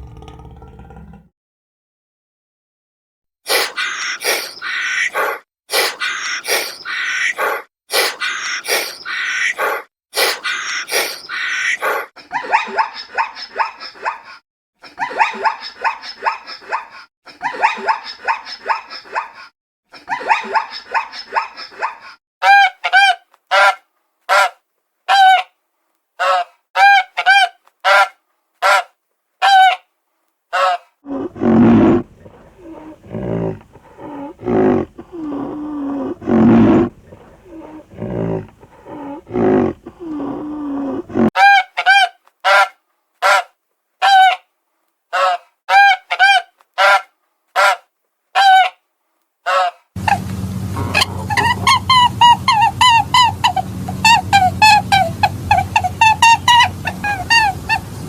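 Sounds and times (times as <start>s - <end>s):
deep rough growling calls: 0.0s - 1.3s, 31.1s - 41.3s, 50.0s - 57.8s
fast yapping cries: 20.0s - 25.5s, 50.8s - 57.8s
loud animal honks: 31.1s - 35.5s, 49.5s - 57.5s.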